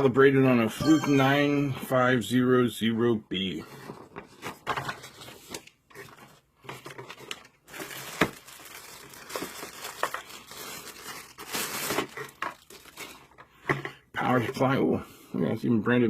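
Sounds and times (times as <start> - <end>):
plastic packaging crinkling: 4.2 - 13.4.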